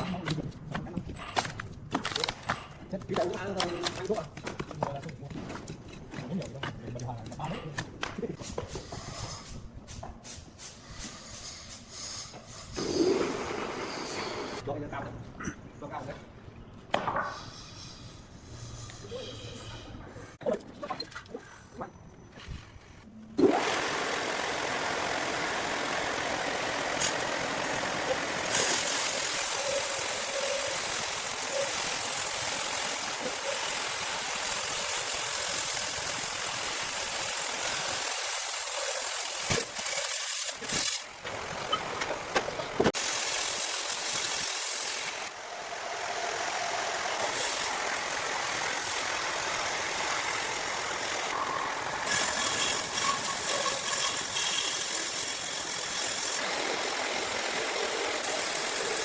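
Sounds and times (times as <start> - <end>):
sawmill machinery running: 23.4 - 59.0.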